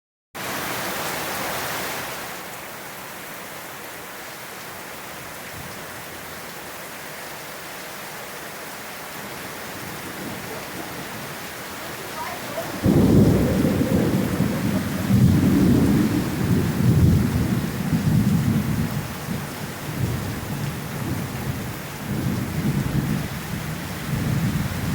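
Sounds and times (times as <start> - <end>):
steady rain: 0.4 - 24.9
thunder rumbling: 9.7 - 24.9.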